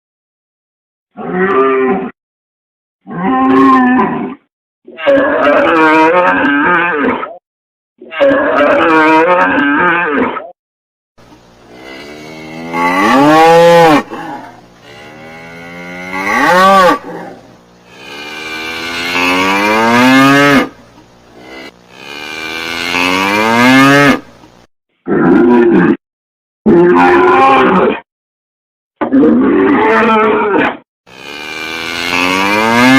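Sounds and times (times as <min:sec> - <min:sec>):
cow mooing: 0:11.6 - 0:24.3, 0:29.5 - 0:32.9.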